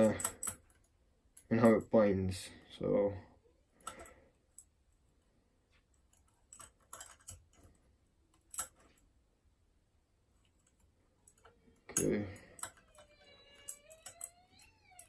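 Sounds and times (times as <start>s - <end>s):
lock pick metallic clicks: 10.7s - 15.0s.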